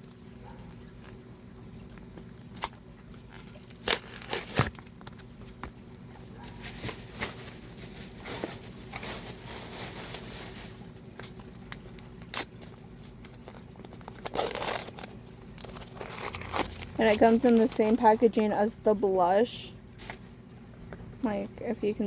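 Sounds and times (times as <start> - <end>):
packaging rustling and crinkling: 2.2 - 5.7, 6.4 - 18.5.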